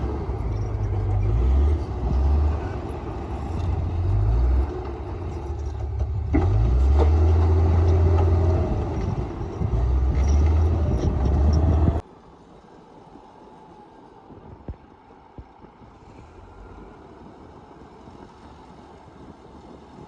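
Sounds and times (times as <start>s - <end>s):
bulldozer diesel engine rumbling: 0.0s - 12.0s.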